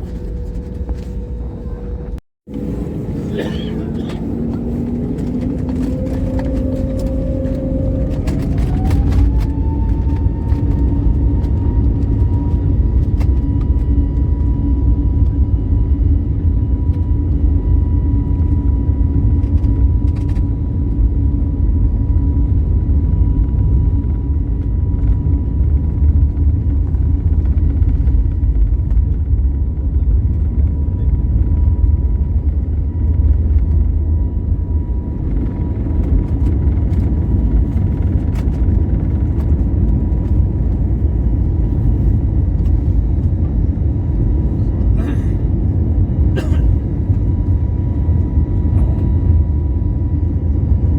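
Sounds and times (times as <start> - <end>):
loud engine rumble: 0.0 - 13.4
jet engine whine: 0.0 - 50.9.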